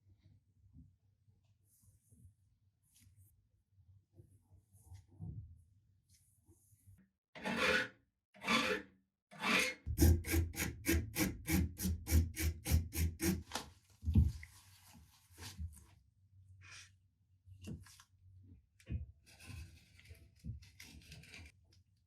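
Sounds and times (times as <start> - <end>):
hand filing or sanding strokes: 9.4 - 13.4.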